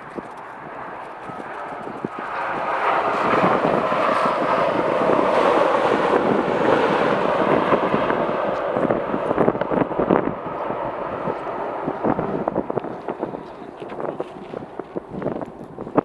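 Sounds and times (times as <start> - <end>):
jet airliner engines roaring: 0.0 - 16.0
wind buffeting microphone: 0.0 - 16.0.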